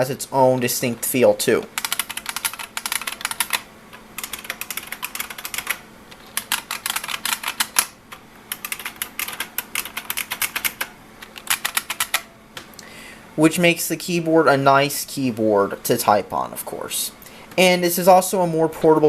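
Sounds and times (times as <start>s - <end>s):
clicky keyboard typing: 1.6s - 3.6s, 4.2s - 7.9s, 8.5s - 12.3s.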